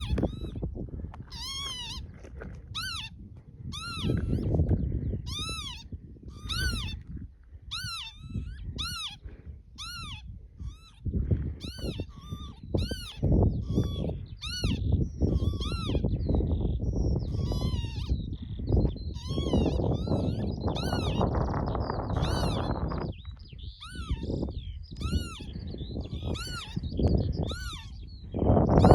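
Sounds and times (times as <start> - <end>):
wind rumble on microphone: 0.0 - 28.9
lapwings calling: 5.3 - 7.0, 22.0 - 23.0, 26.2 - 28.1.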